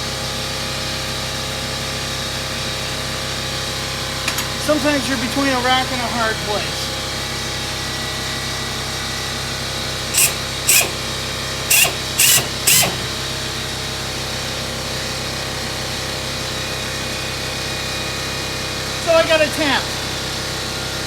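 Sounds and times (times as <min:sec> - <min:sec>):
steady machine hum: 0:01.8 - 0:21.0
power drill bursts: 0:10.0 - 0:13.7.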